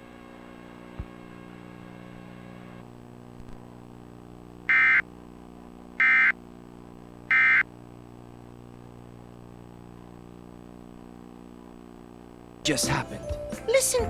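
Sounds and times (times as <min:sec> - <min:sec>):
steady low hum: 0:00.0 - 0:12.7
digital data tone bursts: 0:04.7 - 0:05.0, 0:06.0 - 0:06.4, 0:07.3 - 0:07.6.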